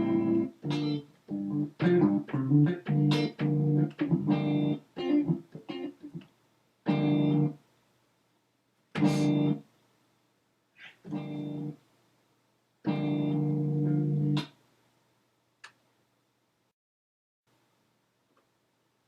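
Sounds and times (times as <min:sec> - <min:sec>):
chopped guitar sample slices: 0:00.0 - 0:06.2, 0:09.0 - 0:09.6, 0:12.9 - 0:14.6.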